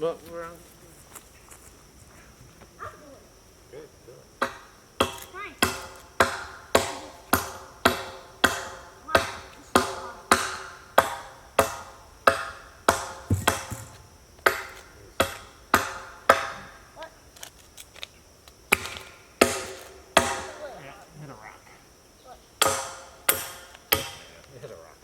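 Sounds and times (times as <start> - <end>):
hammer striking a nail: 4.4 - 16.8, 18.7 - 20.6, 22.6 - 24.4.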